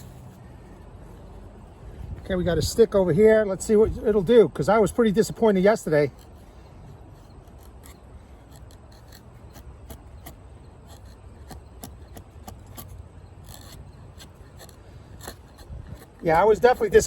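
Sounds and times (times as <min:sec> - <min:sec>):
blade scraping wood: 0:00.0 - 0:03.0, 0:03.6 - 0:17.0.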